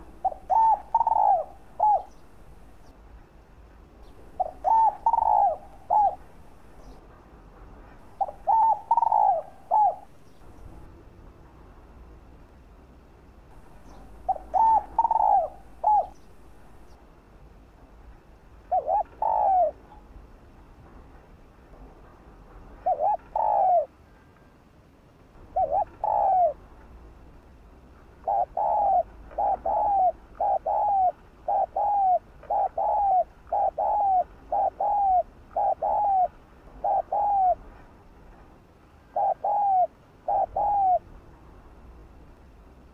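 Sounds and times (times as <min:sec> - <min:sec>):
dove cooing: 0:00.0 - 0:02.9, 0:04.1 - 0:06.9, 0:08.1 - 0:10.9, 0:13.6 - 0:17.0, 0:18.7 - 0:20.0, 0:22.8 - 0:23.9, 0:25.5 - 0:26.6, 0:28.2 - 0:37.7, 0:39.0 - 0:41.1.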